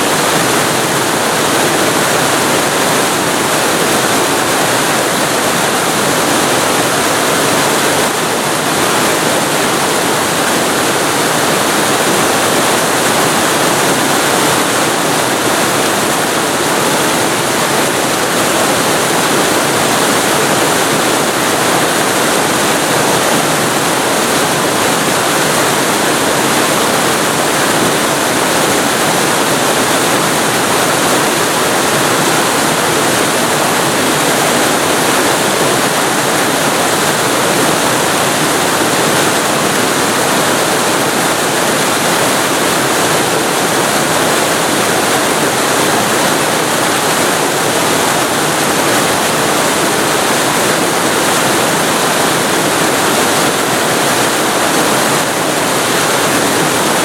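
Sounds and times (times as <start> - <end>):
waterfall rushing: 0.0 - 57.0.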